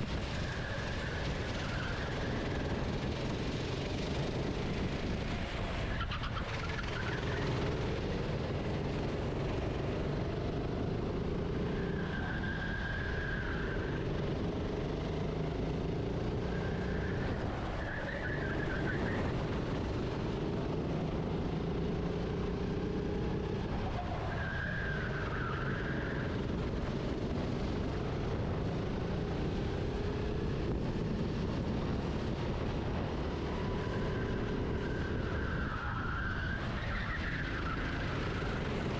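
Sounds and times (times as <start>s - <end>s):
kart engine revving: 0.2s - 28.0s
tyre squeals: 11.7s - 14.1s, 34.0s - 38.6s.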